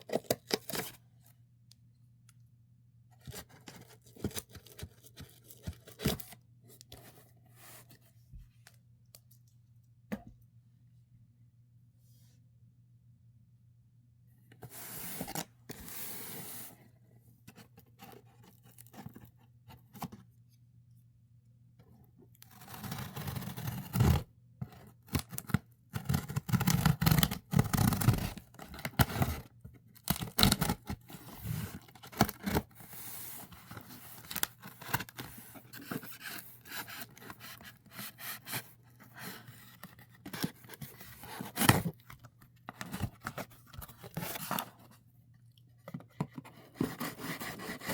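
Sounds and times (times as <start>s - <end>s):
cardboard and plastic rustling: 28.4s - 45.1s.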